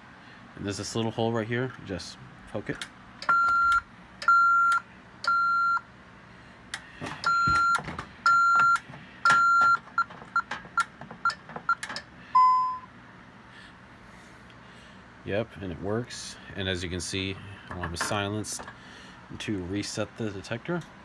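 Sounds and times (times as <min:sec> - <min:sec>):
alarm keypad beeping: 0:03.3 - 0:05.8, 0:07.2 - 0:10.5, 0:12.4 - 0:12.9
short key beeps: 0:03.3 - 0:05.8, 0:07.2 - 0:10.5, 0:12.4 - 0:12.9.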